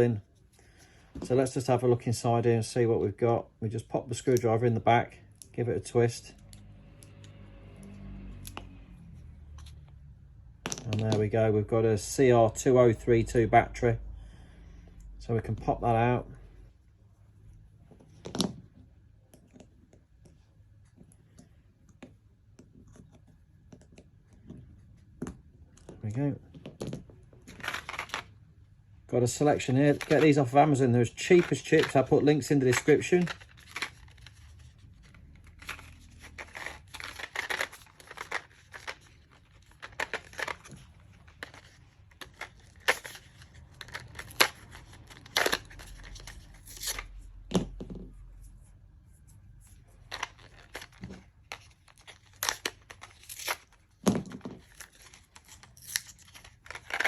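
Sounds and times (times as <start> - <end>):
plastic packaging crinkling and tearing: 31.3 - 47.2, 50.0 - 54.0, 54.6 - 57.0.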